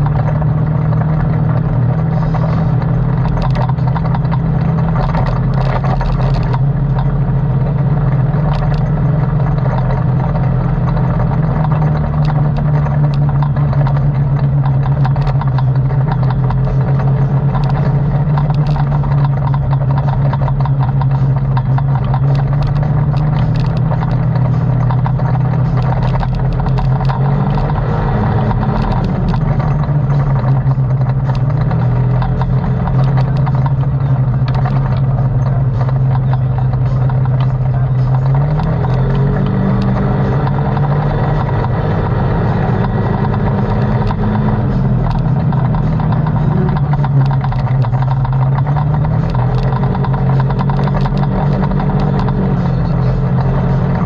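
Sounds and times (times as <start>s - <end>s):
atv engine running: 0.0s - 54.0s
rattling and small knocks: 0.0s - 54.0s.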